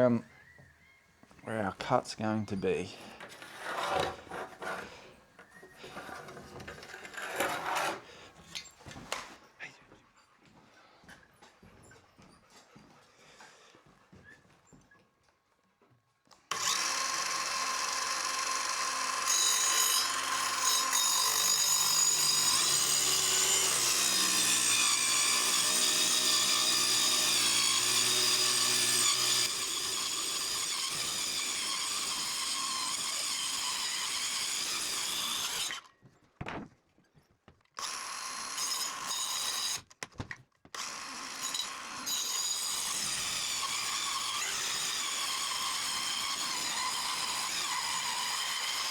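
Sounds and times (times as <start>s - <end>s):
power saw cutting timber: 1.5s - 8.1s, 16.5s - 35.9s, 37.8s - 39.9s, 40.7s - 48.9s.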